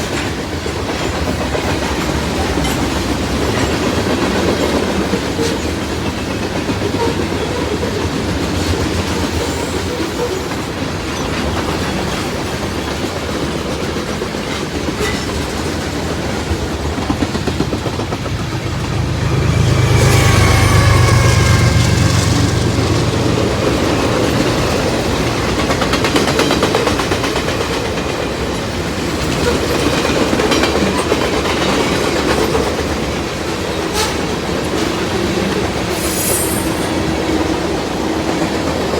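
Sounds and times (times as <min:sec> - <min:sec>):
train wheels clacking on rails: 0:00.0 - 0:38.9
high-pitched whine: 0:18.2 - 0:24.2.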